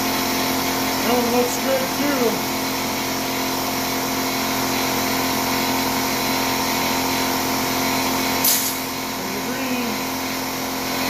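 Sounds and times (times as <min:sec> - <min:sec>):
air compressor humming: 0:00.0 - 0:11.0
short hiss: 0:08.4 - 0:08.8.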